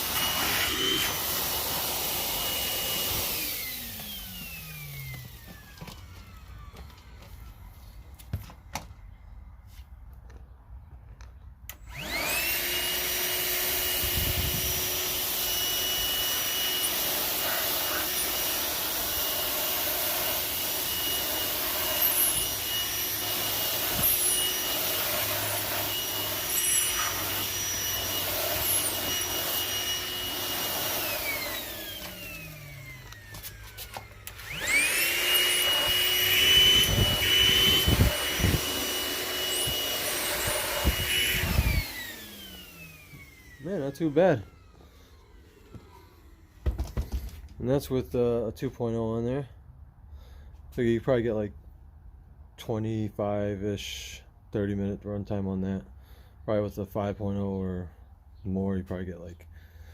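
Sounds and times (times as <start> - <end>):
handheld vacuum motor whine: 0.0 - 8.3, 11.7 - 47.5.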